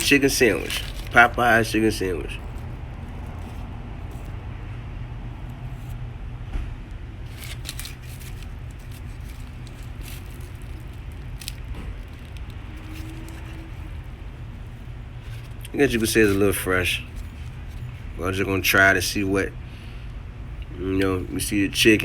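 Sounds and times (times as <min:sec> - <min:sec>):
paper wrapper rustling: 0:00.0 - 0:04.4, 0:07.2 - 0:18.2
steady low hum: 0:00.0 - 0:22.0.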